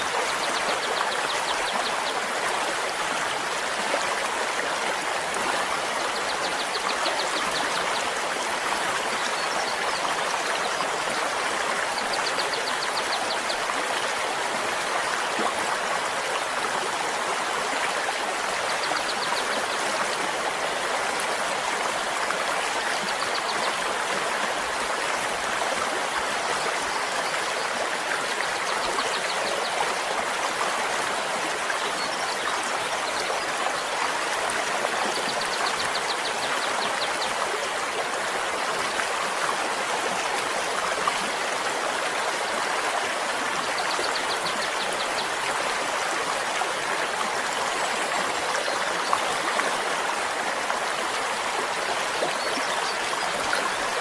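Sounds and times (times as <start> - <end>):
stream flowing: 0.0 - 54.0.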